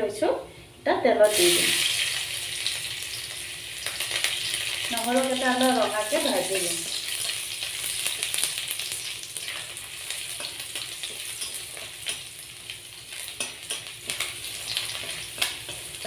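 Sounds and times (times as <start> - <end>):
garlic sizzling in hot oil: 1.2 - 16.0
stirring in a wok: 7.0 - 16.0.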